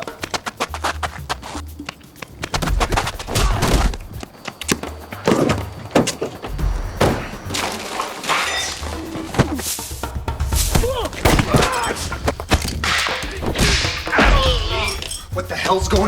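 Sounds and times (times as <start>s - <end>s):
background music with bass beat: 0.0s - 7.6s
thuds and hard impacts: 2.4s - 8.1s, 10.4s - 14.6s
breaking and shattering: 7.0s - 9.8s, 10.8s - 15.2s.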